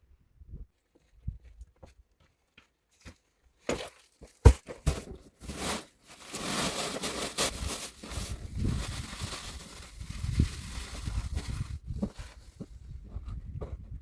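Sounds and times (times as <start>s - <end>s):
rustling handling noise: 3.0s - 13.8s.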